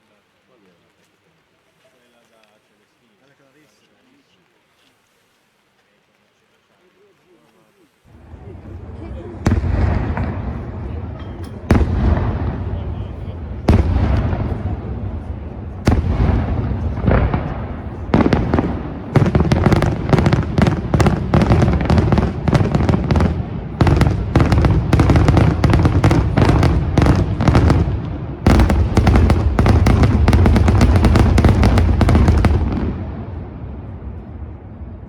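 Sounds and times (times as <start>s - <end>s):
fireworks bangs: 8.1s - 35.0s.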